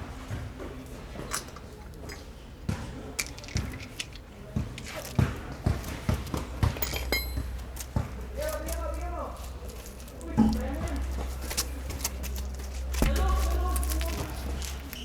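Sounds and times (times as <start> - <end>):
metal tools knocking on metal: 6.7 - 7.8, 10.4 - 11.2.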